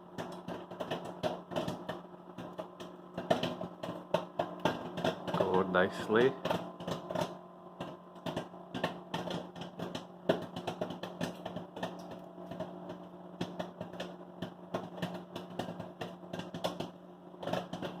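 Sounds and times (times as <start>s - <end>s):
microwave humming: 0.0s - 18.0s
popcorn popping: 0.0s - 18.0s.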